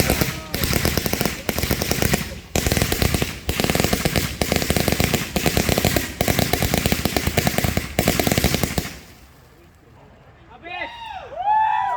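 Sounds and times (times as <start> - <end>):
fireworks bangs and crackles: 0.0 - 9.3.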